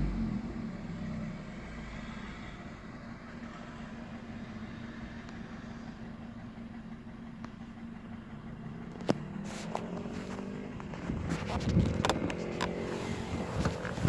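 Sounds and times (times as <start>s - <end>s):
petrol engine idling: 0.0s - 14.0s.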